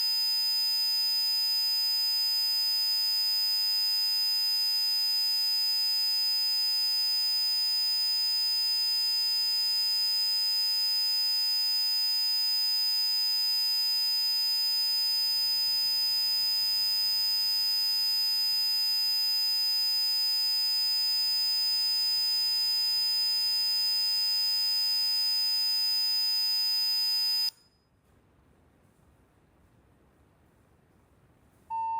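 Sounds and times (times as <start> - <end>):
faint steady tones: 13.5 - 27.8
piercing high electronic tone: 13.6 - 27.6.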